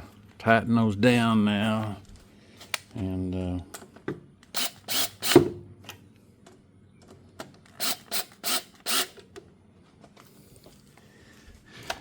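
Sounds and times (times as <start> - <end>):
socket ratchet strokes: 7.8 - 9.2.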